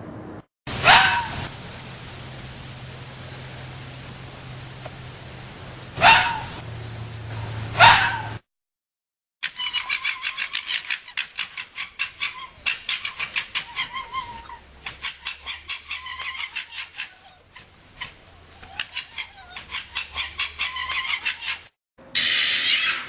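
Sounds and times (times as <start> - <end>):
fox chattering yelps: 0.8 - 1.5, 6.0 - 6.6, 7.8 - 8.4, 9.4 - 23.0.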